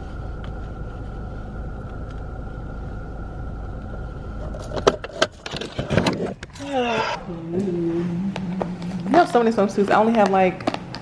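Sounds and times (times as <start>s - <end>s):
car engine idling: 0.0s - 10.5s
faint steady whine: 0.0s - 11.0s.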